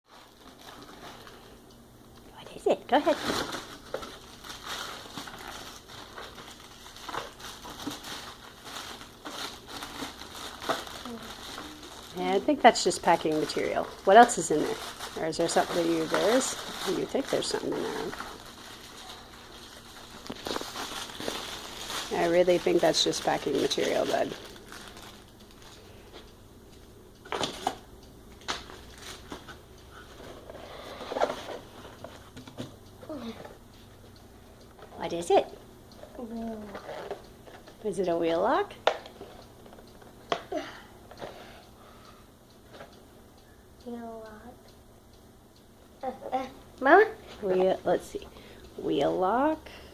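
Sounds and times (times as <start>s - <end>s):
packing material crinkling: 3.0s - 25.8s.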